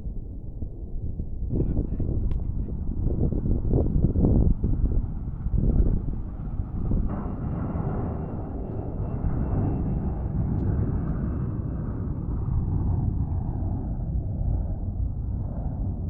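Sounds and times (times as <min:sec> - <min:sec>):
aircraft engine rumble: 0:00.0 - 0:16.0
faint high whine: 0:06.8 - 0:13.6.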